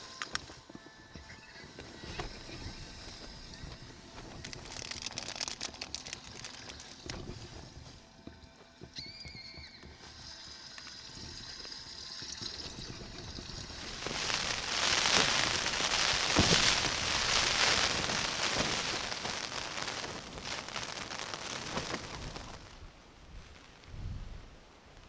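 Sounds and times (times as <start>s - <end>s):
heavy rain pattering: 4.4s - 7.1s, 13.1s - 22.8s.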